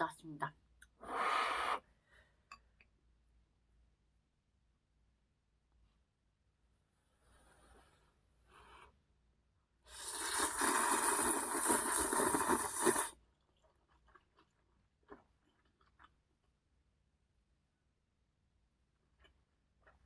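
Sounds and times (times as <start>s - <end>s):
noodles slurped: 9.9s - 16.3s.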